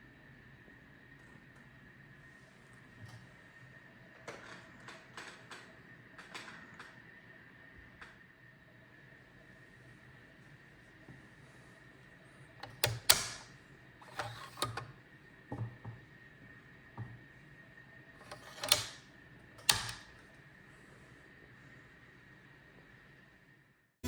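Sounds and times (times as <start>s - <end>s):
sharp clicks and knocks: 12.6s - 14.9s, 18.2s - 19.0s, 19.6s - 20.2s.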